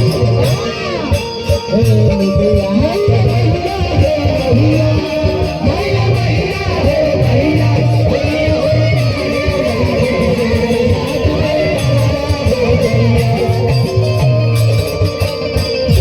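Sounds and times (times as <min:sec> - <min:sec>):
pop music with guitar and bass: 0:00.0 - 0:16.0.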